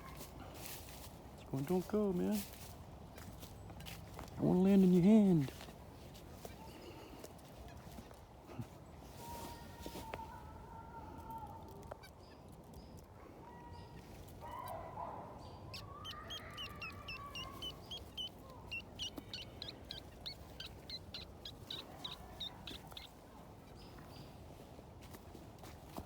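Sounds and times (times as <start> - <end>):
rapid high bird chirps: 15.4 - 24.2
bird honk-like call: 15.7 - 23.1.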